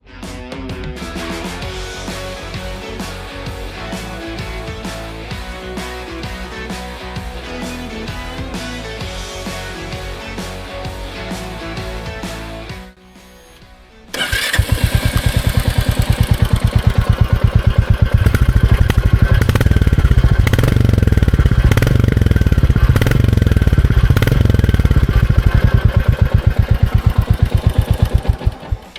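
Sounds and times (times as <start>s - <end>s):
motorcycle engine starting and idling: 13.2s - 28.9s.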